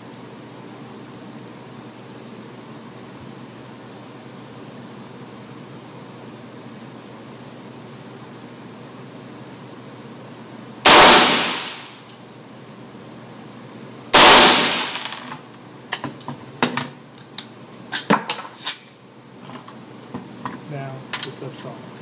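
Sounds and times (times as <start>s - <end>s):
light clicks and clinks: 12.1s - 12.8s.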